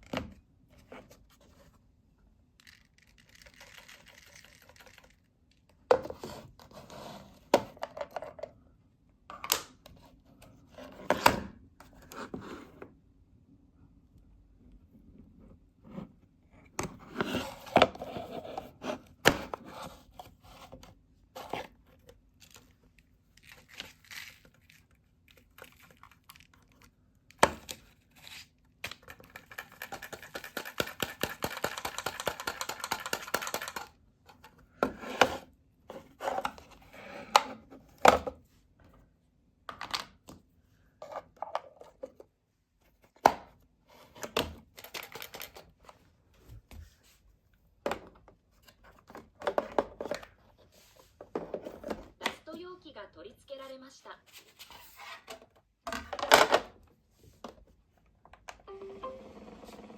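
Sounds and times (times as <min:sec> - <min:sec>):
paper rustling and tearing: 0:23.4 - 0:25.0.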